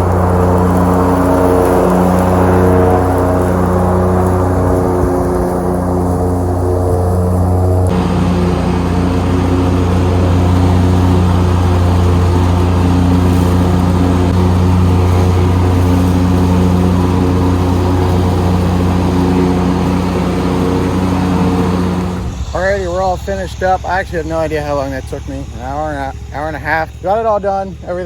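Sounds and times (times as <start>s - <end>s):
lawn mower engine running: 0.0s - 28.0s
noisy mower blade whirr: 0.0s - 28.0s.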